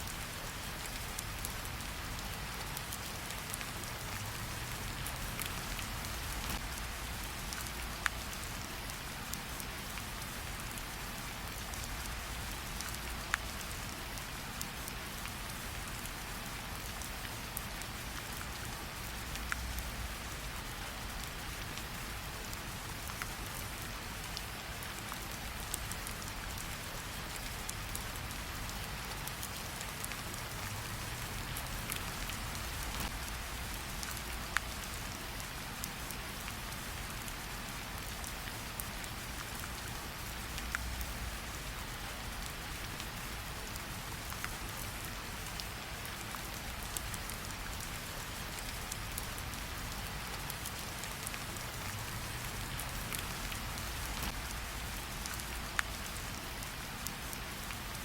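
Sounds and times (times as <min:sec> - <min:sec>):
steady rain hiss: 0:00.0 - 0:58.0.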